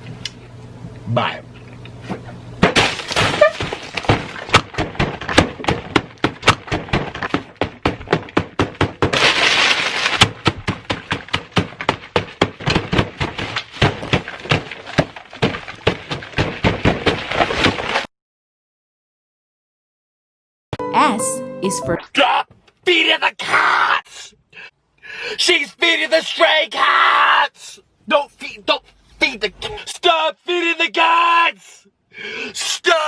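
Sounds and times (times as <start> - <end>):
crunching crisp food: 9.2 - 10.4.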